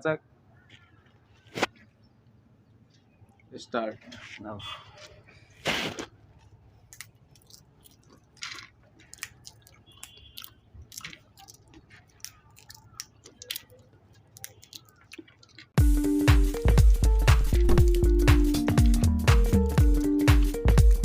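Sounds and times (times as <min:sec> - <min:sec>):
chewing crunches: 0:06.0 - 0:20.5
peanut shells cracking: 0:06.4 - 0:15.8, 0:17.6 - 0:19.0.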